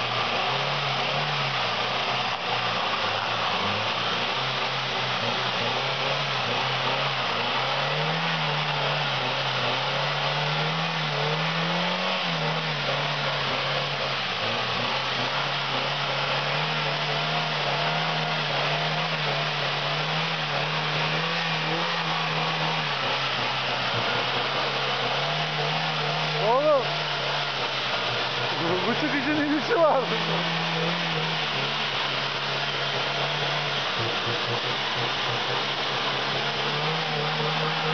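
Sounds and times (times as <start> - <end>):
car engine running under load: 0.0 - 37.9
steady hiss: 0.0 - 37.9.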